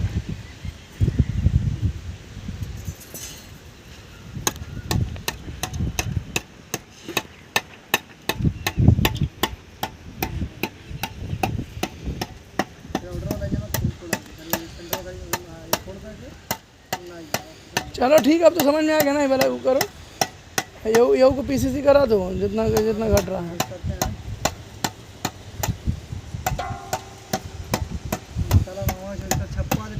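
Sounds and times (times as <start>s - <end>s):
sharp metallic knocks: 4.4s - 21.1s, 26.4s - 29.8s
dull low thuds: 8.3s - 14.3s, 25.3s - 29.9s.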